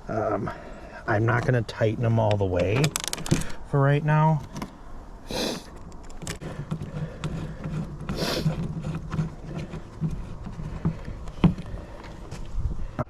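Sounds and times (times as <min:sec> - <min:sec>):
clicks and scrapes of screws and tools: 0:02.3 - 0:03.6, 0:05.6 - 0:12.5.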